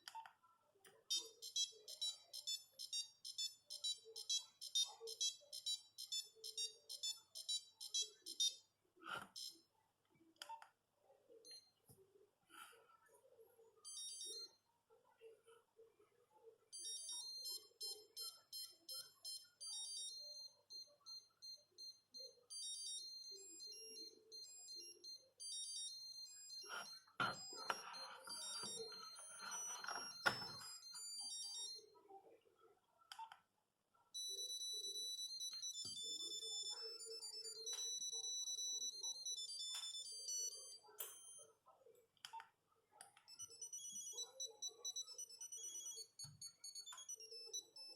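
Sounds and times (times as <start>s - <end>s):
monophonic ringtone melodies: 1.1s - 8.6s, 13.9s - 14.5s, 16.7s - 31.9s, 34.2s - 41.5s, 43.3s - 47.9s.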